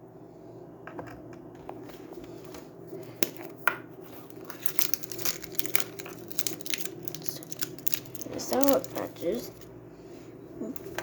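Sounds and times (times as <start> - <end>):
plastic wrappers crinkling: 4.1 - 9.7.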